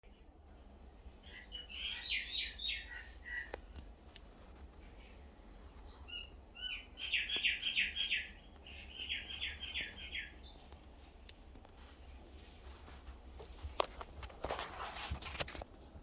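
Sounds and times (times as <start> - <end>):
bird chirping: 1.2 - 3.8, 4.8 - 10.7.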